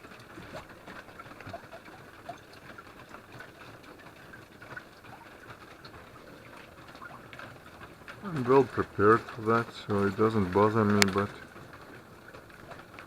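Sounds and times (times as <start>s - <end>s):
running water: 0.0s - 13.0s
water dripping in a cave: 0.0s - 13.0s.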